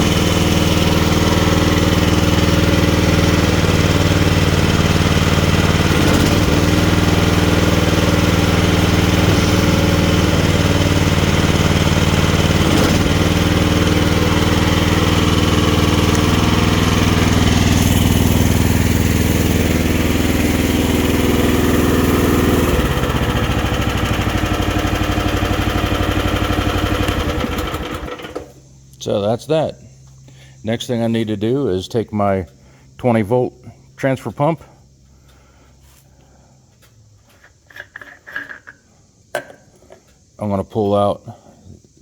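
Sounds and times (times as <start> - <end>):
mini excavator engine running: 0.0 - 28.6.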